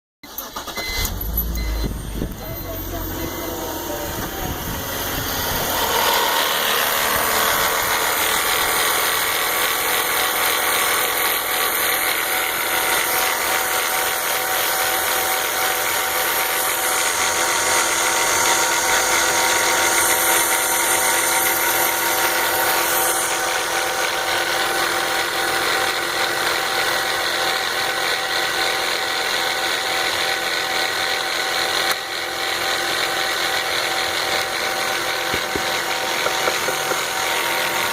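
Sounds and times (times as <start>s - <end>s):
car engine running: 0.4s - 37.9s.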